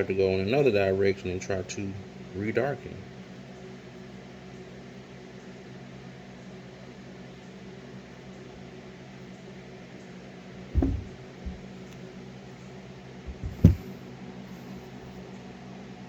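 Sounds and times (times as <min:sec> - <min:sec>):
low hum of running appliance: 0:00.0 - 0:16.0
dull bump: 0:10.7 - 0:12.0, 0:13.3 - 0:14.0.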